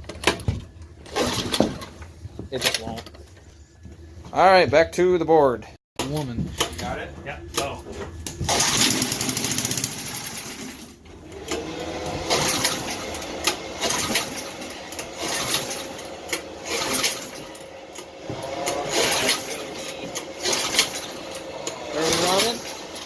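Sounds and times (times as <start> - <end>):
small mower engine running rough: 11.3 - 23.0.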